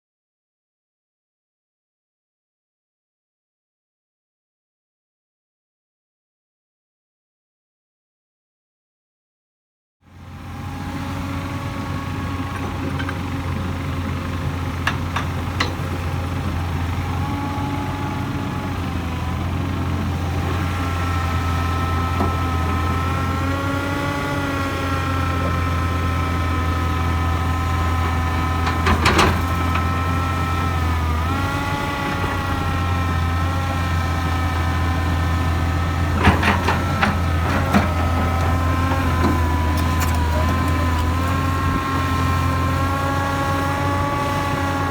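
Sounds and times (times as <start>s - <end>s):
excavator diesel engine: 10.1s - 44.9s
hydraulics whining: 11.1s - 44.9s.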